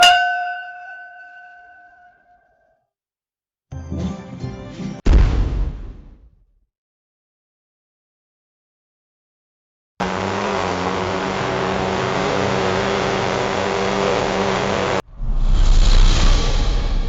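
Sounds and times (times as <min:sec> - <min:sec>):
deep boom with low rumble: 0:05.1 - 0:06.4, 0:15.0 - 0:17.0
engine-like rushing noise: 0:10.0 - 0:17.0.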